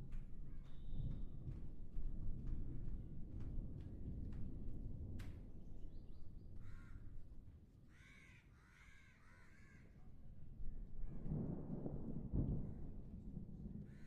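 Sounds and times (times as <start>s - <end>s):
crow cawing: 7.9s - 9.9s
distant thunder rumble: 10.9s - 14.0s.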